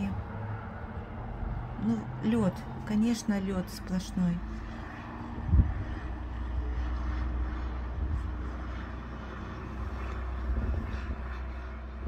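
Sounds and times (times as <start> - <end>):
bus engine low rumble: 0.0 - 12.0.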